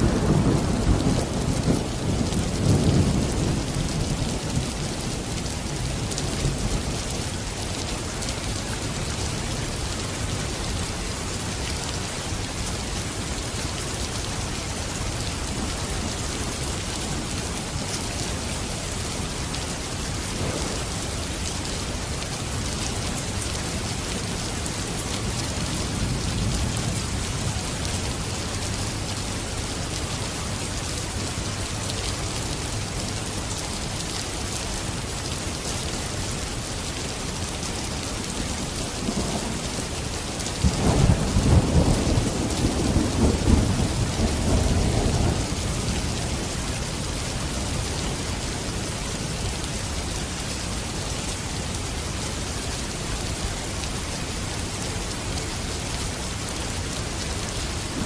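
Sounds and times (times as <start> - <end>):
steady rain falling: 0.0 - 58.0
thunder rumbling: 20.2 - 21.5, 40.6 - 45.8
loud thunderclap: 20.3 - 21.2.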